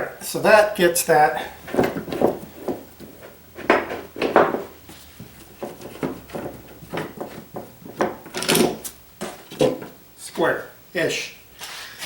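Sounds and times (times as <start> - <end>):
wooden pieces knocking: 1.4 - 10.0
sharp wooden clatter: 1.5 - 10.0.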